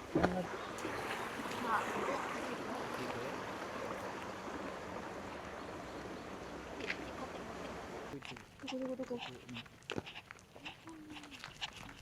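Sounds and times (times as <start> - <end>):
running water rushing: 0.0 - 8.2.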